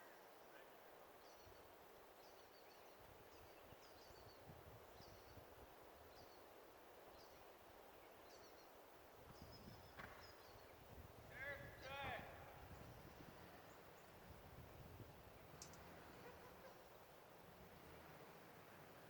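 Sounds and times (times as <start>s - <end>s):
small bird chirping: 7.1s - 10.9s, 15.3s - 17.0s.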